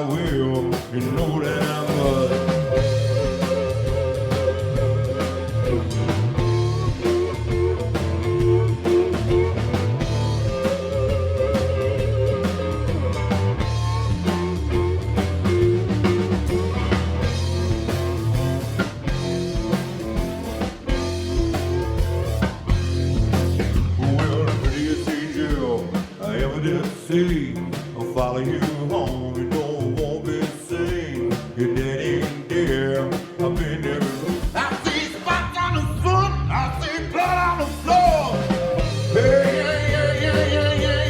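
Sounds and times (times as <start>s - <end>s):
drum kit beat: 0.0s - 35.7s, 37.0s - 41.0s
electric guitar held notes: 1.8s - 25.0s.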